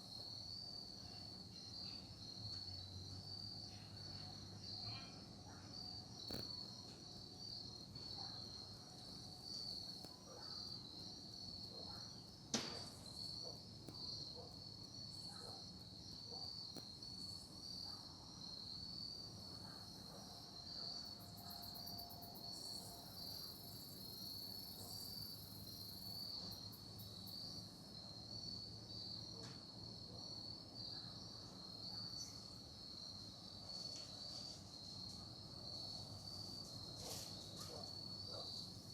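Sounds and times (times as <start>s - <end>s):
crickets chirping: 0.0s - 38.9s
high buzzing insect call: 21.0s - 27.6s.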